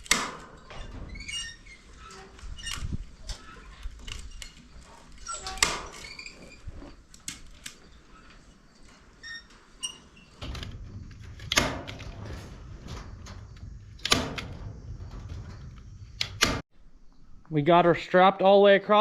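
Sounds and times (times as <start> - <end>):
chicken wire clicking and rattling: 7.0 - 16.6.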